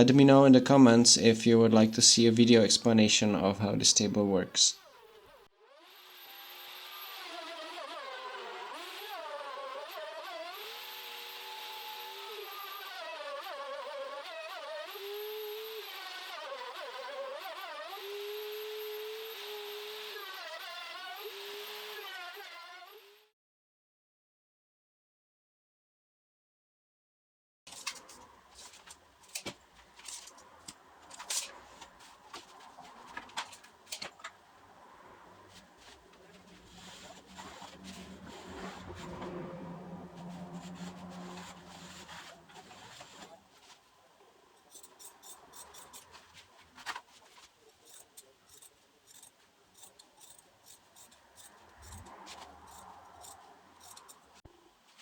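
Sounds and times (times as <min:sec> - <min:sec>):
router motor cutting wood: 0:04.8 - 0:23.2, 0:35.6 - 0:43.4
wood and tools clicking and knocking: 0:27.7 - 0:34.4, 0:44.6 - 0:54.4.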